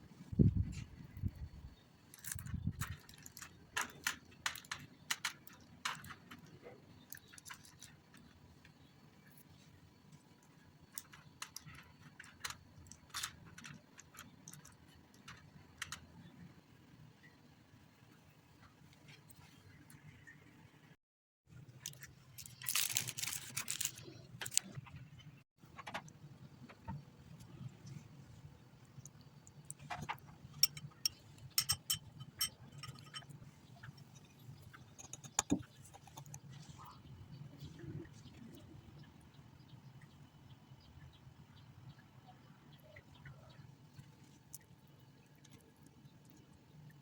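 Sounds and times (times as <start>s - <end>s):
rustling and scraping: 21.8s - 25.1s
utensils and dishes clicking: 29.7s - 36.5s.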